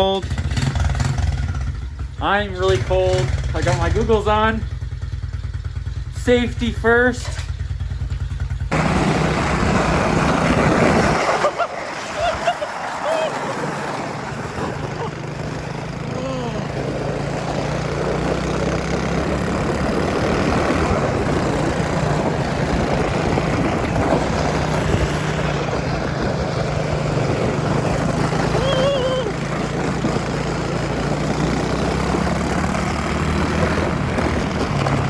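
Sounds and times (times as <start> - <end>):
small engine fast idle: 7.1 - 13.2.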